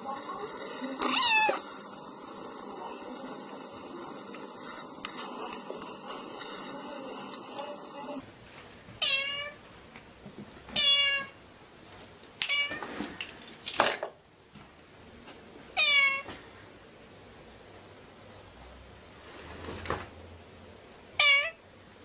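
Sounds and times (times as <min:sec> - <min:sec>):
cat meowing: 0:01.0 - 0:01.7, 0:09.0 - 0:09.6, 0:10.8 - 0:11.4, 0:15.8 - 0:16.3, 0:21.2 - 0:21.6.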